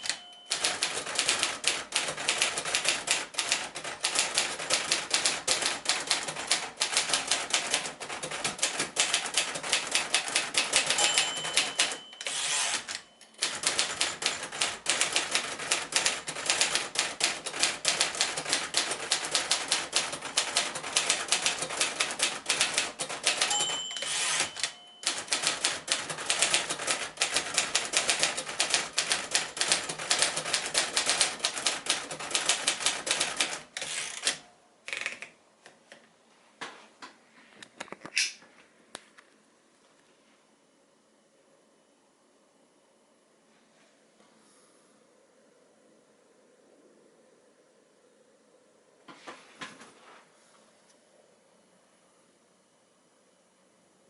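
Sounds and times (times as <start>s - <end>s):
typewriter margin bell: 0.0s - 34.4s
manual typewriter typing: 0.0s - 35.2s
typewriter carriage return: 0.0s - 35.2s.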